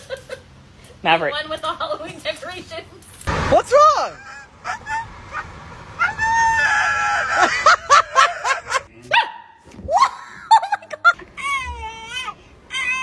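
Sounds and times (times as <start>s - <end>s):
person laughing: 3.9s - 5.4s, 6.0s - 8.9s.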